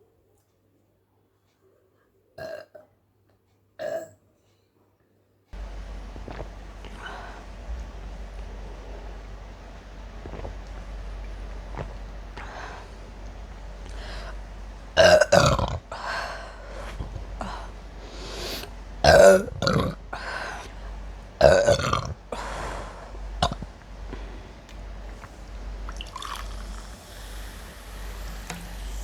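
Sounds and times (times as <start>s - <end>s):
woman burping loudly: 15.0s - 16.0s, 19.0s - 20.0s, 21.4s - 22.2s, 23.4s - 23.7s.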